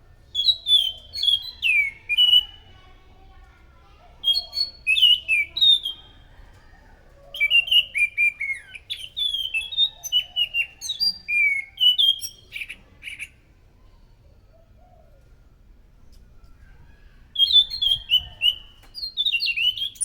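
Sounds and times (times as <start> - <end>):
thrush singing whistled notes: 0.3 - 2.6, 4.2 - 6.0, 7.5 - 13.2, 17.4 - 20.0.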